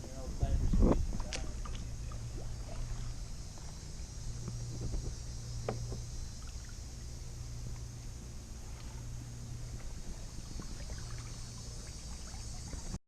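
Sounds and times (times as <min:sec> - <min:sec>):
paddle splashing and dripping: 0:01.2 - 0:04.6, 0:05.6 - 0:13.0
light knocks: 0:04.5 - 0:06.1.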